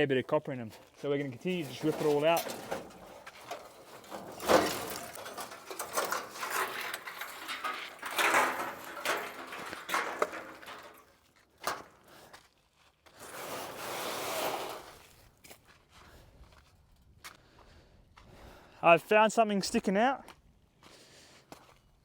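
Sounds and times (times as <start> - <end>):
metal and wiring scraping: 0.6 - 12.1, 13.2 - 15.3.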